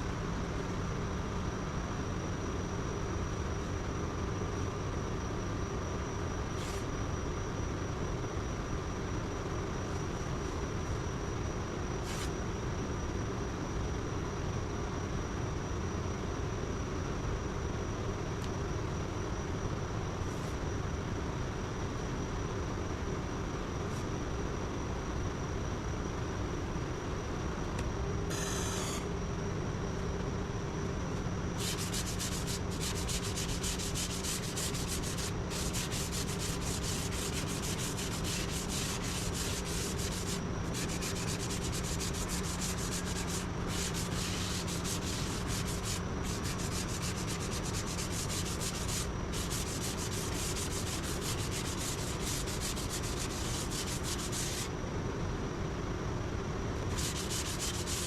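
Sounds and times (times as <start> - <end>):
steady machine hum: 0.0 - 58.0
sanding body filler: 31.6 - 54.7, 56.9 - 58.0.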